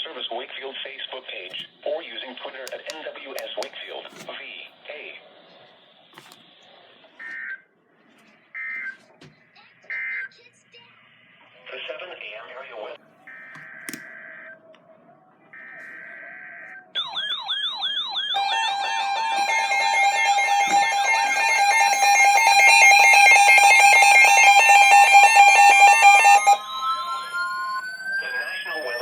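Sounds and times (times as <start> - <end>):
rapid multi-tone beeping alarm: 13.3 - 14.6, 15.6 - 29.0
warbling electronic tones: 17.0 - 29.0.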